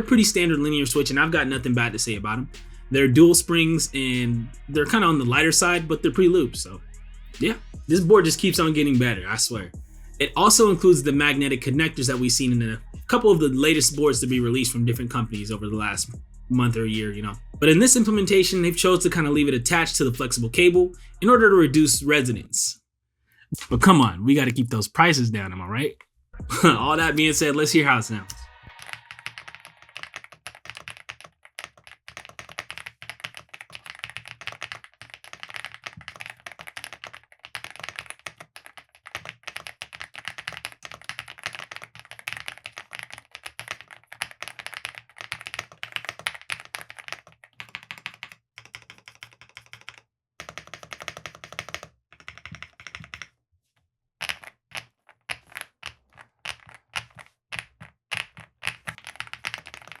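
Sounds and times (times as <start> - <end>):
mechanical keyboard typing: 28.7 - 53.3, 54.2 - 60.0.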